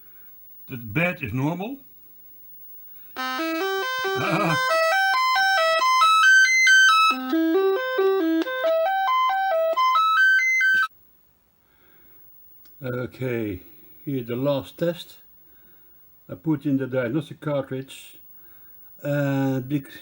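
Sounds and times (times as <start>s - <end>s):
buzzy electronic melody: 3.2s - 10.9s.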